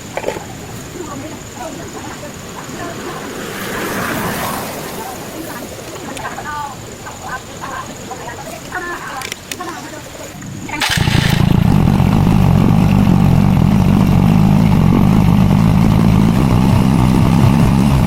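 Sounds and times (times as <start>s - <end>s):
scooter engine running: 10.7s - 18.0s.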